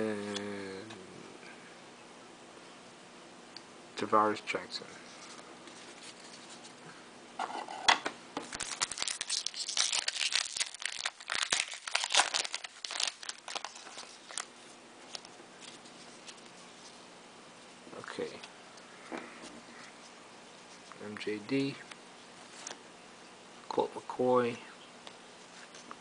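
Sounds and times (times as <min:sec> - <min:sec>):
wrapper tearing and crinkling: 0:08.4 - 0:14.5.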